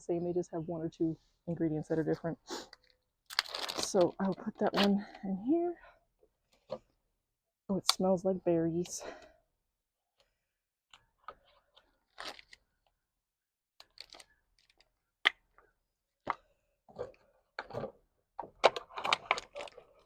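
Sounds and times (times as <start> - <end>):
plastic packaging crinkling: 3.3 - 4.8, 12.0 - 12.6, 13.8 - 14.9.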